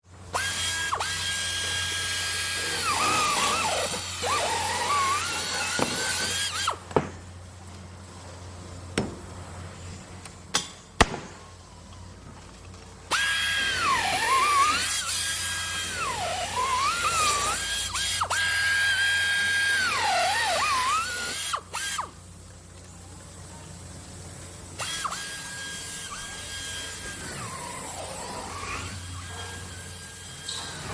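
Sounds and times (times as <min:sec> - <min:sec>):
power drill motor whine: 0:00.3 - 0:06.8, 0:13.1 - 0:22.2, 0:24.8 - 0:30.9.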